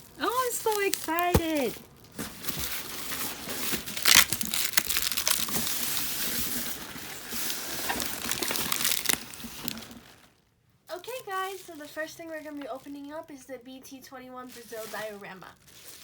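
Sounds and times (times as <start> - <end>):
packing material rustling and crinkling: 0.0 - 13.4, 14.0 - 16.0.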